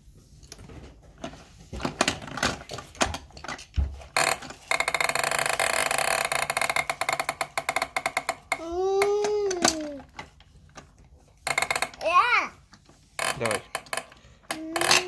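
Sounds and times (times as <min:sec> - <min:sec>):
plastic toy knocks and clicks: 0:01.8 - 0:12.1, 0:13.2 - 0:15.0
plastic clicking rattle: 0:02.0 - 0:10.9, 0:13.2 - 0:15.0.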